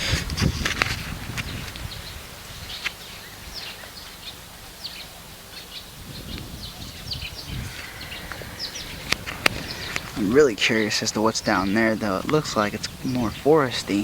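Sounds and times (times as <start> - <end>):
small birds chirping: 1.2 - 14.0
low rumble: 7.1 - 10.5.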